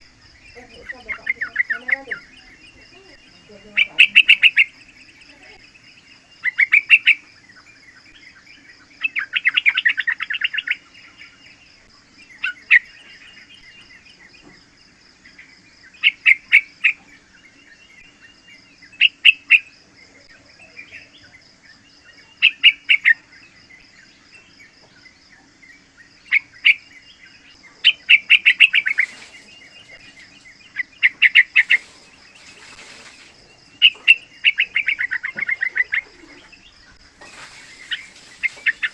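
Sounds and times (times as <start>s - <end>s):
bird singing bubbly notes: 26.0s - 38.9s.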